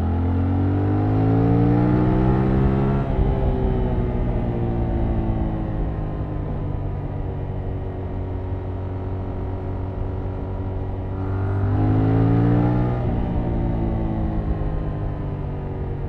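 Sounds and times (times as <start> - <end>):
motorcycle engine revving: 0.0 - 5.2, 8.6 - 16.0.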